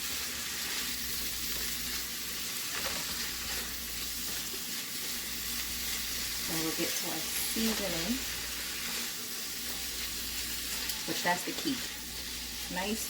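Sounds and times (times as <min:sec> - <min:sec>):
meat frying in a pan: 0:00.0 - 0:13.0.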